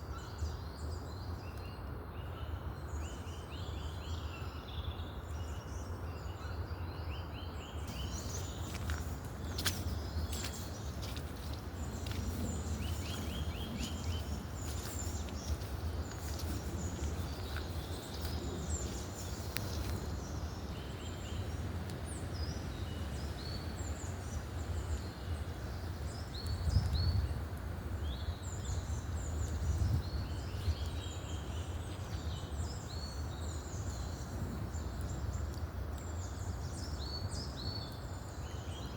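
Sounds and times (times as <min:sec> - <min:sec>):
songbirds chirping and trilling: 0:00.0 - 0:38.9
steady low rumble: 0:07.9 - 0:20.6.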